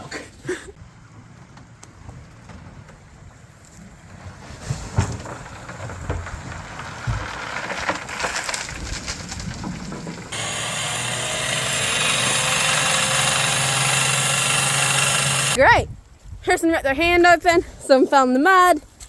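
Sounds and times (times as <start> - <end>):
motor humming: 10.3 - 15.6.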